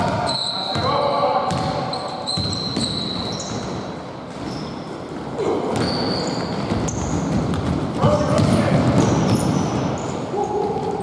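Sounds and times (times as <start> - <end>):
basketball bouncing on court: 0.0 - 4.6, 5.7 - 10.0
shoe squeaks: 0.2 - 0.9, 1.8 - 3.8, 4.4 - 7.4, 8.9 - 10.7.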